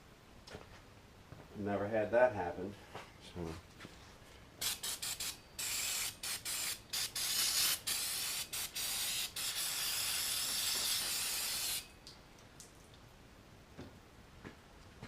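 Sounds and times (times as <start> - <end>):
aerosol spray can hissing: 4.6 - 11.9.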